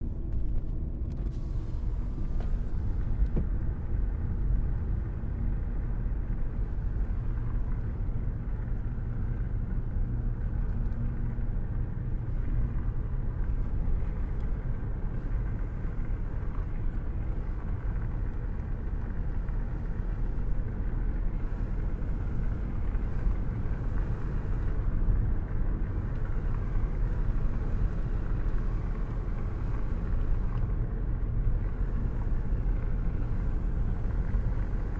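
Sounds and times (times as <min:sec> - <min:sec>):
car cruising rumble: 0:00.0 - 0:34.9.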